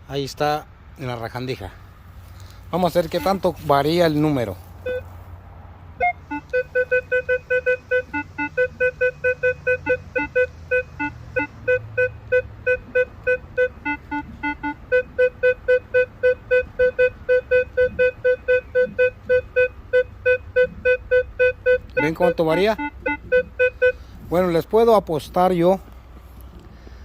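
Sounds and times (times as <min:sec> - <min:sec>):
metal detector beeps: 0:03.1 - 0:03.7, 0:04.8 - 0:05.1, 0:06.0 - 0:24.0.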